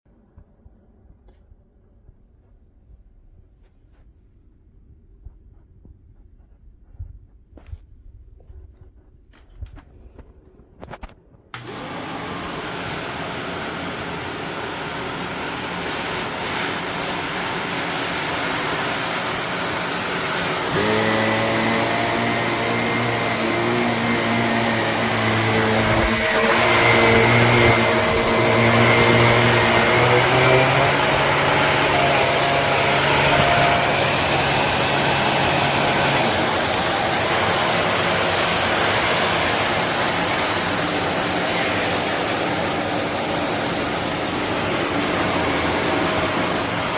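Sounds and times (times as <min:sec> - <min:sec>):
upright vacuum running: 0:10.8 - 0:46.9.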